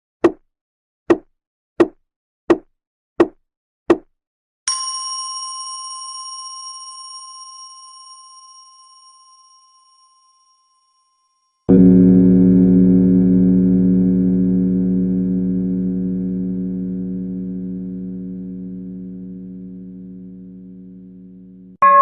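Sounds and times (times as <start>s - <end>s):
bowl bell ringing: 4.7s - 11.7s.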